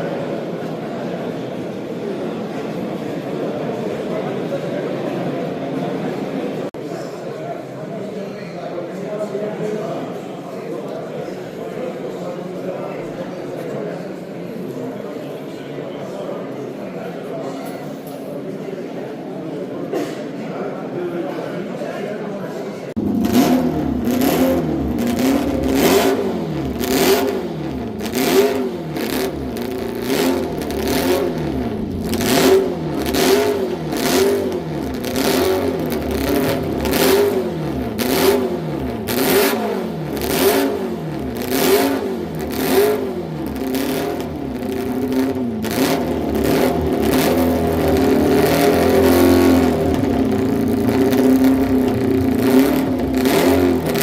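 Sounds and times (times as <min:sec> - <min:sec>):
motorcycle engine revving: 0:23.0 - 0:54.0.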